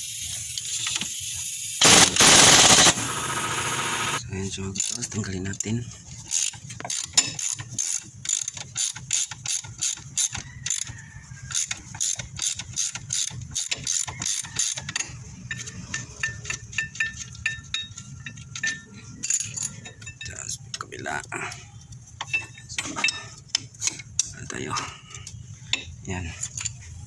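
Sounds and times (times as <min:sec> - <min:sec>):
ratchet wrench clicking: 0:00.0 - 0:04.2, 0:04.8 - 0:05.1, 0:06.3 - 0:10.9, 0:11.5 - 0:17.3.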